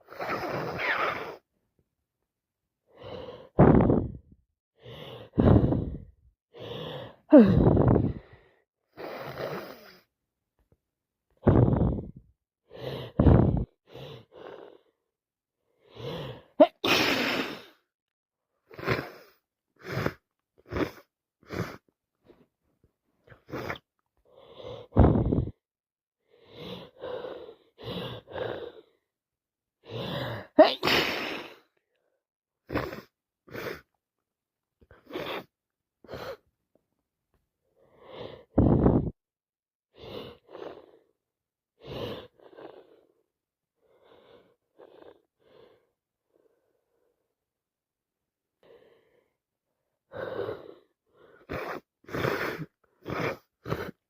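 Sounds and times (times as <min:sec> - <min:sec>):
woman sneezing: 0:16.6 - 0:17.6, 0:30.6 - 0:31.6
woman sniffling: 0:16.6 - 0:17.8, 0:30.1 - 0:31.7.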